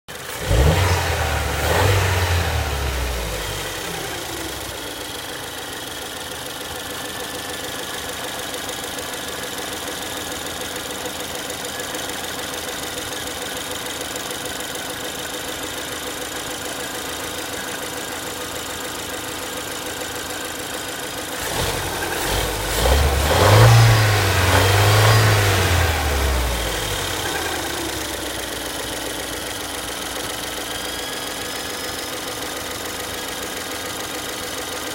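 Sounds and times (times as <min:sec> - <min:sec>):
car engine revving: 0:00.1 - 0:05.4, 0:21.4 - 0:34.8.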